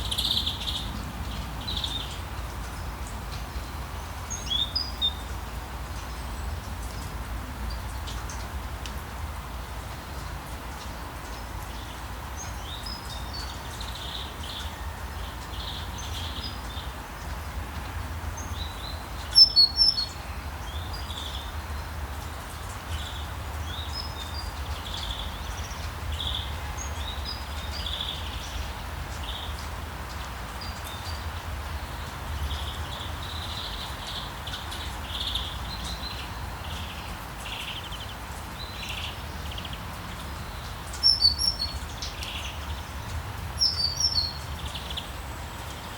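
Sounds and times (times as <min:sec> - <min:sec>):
birds chirping: 0:30.6 - 0:45.9.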